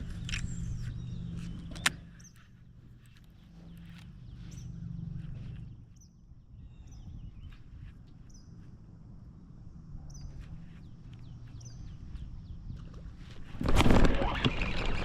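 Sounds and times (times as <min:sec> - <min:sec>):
bird chirping: 0:00.0 - 0:08.8, 0:10.0 - 0:13.0.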